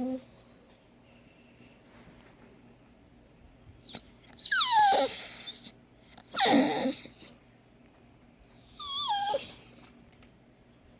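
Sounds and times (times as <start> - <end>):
dog whining: 0.0 - 0.2, 3.8 - 7.3, 8.6 - 9.9.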